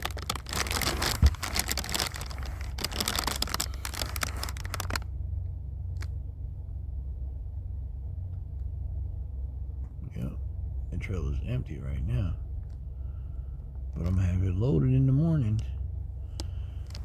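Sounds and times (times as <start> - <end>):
crackling crinkling handling noise: 0.0 - 5.1, 16.3 - 17.0
steady low rumble: 0.0 - 17.0.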